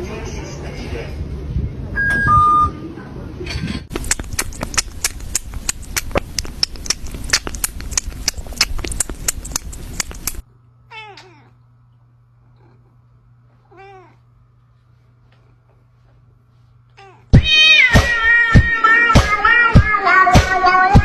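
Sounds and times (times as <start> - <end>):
cat meowing: 10.9 - 11.6, 13.7 - 14.2, 17.0 - 21.0.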